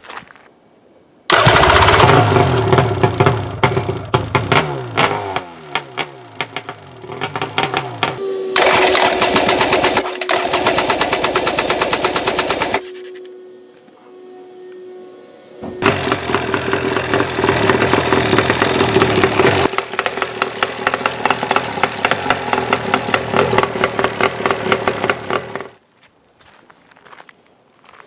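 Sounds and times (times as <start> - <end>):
jet ski engine running: 1.3 - 11.5, 15.8 - 25.7.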